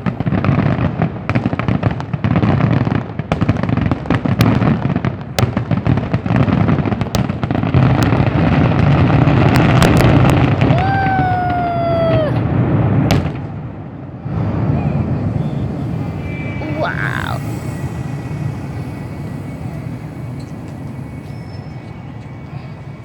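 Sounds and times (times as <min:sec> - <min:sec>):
fireworks bangs and crackling: 0:00.0 - 0:23.0
falling tone: 0:10.7 - 0:12.5, 0:14.1 - 0:23.0.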